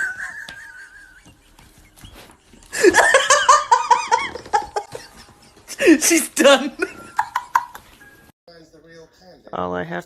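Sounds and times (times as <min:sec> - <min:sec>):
person laughing: 0:00.0 - 0:06.2.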